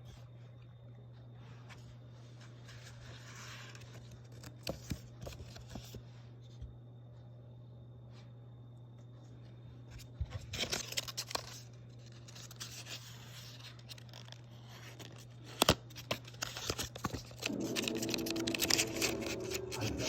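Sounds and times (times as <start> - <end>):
low hum: 17.4 - 20.0.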